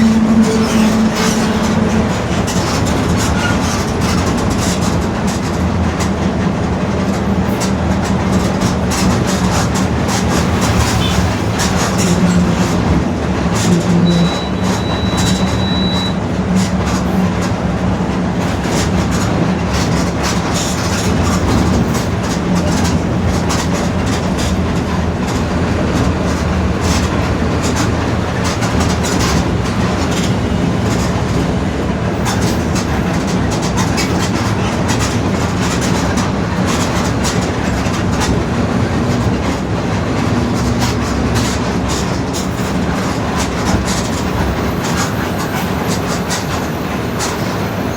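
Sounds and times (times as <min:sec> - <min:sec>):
bus engine drone: 0:00.0 - 0:47.9
brief high beep: 0:14.0 - 0:16.2.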